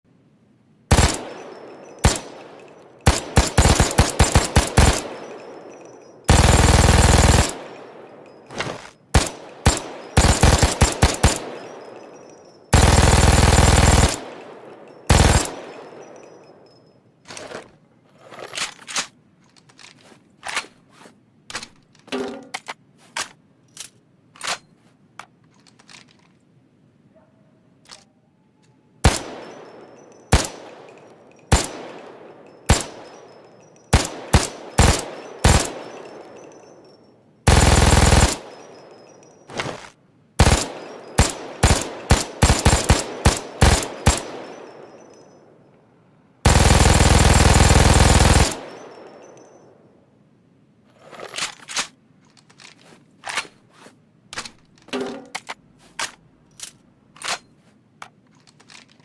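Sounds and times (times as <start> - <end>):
machine gun firing bursts: 0.9 - 16.6, 29.0 - 36.7, 37.5 - 39.2, 40.4 - 45.1, 46.4 - 49.6
faint scattered gunshots: 0.9 - 16.7, 29.0 - 36.6.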